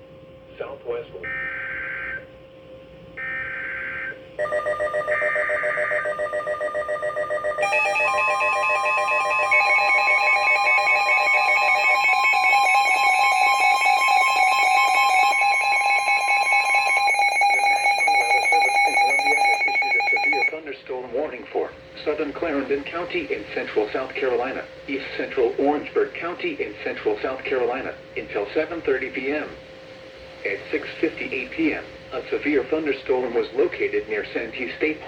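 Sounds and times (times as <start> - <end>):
pulsing alarm tones: 1.2 - 2.2, 3.2 - 20.6
steady warning alarm tone: 1.2 - 2.4, 3.1 - 35.0
buzzy data bursts: 7.6 - 20.6.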